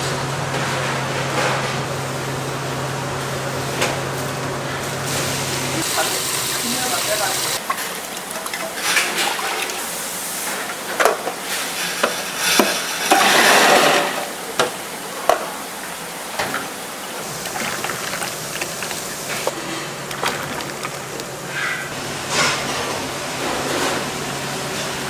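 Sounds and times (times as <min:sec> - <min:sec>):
food sizzling in a pan: 0:05.8 - 0:17.2
utensil scraping a pan: 0:10.6 - 0:14.7.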